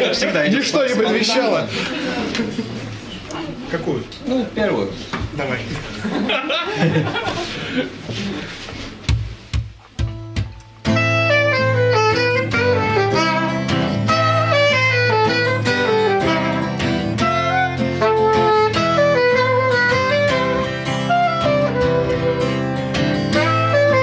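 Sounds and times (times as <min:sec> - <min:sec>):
guitar: 0:09.2 - 0:24.0
saxophone: 0:10.9 - 0:24.0.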